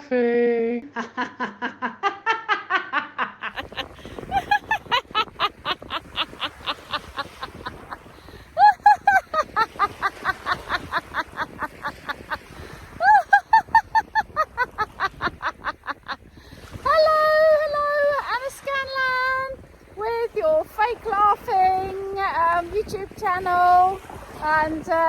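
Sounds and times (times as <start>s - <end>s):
person fake laughing: 0.9s - 7.9s, 8.6s - 11.2s, 13.0s - 15.8s.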